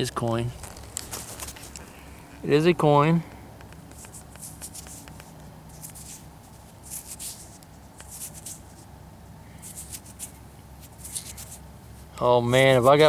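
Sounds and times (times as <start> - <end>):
fingers rubbing a coin: 3.9 - 8.8, 9.6 - 12.0.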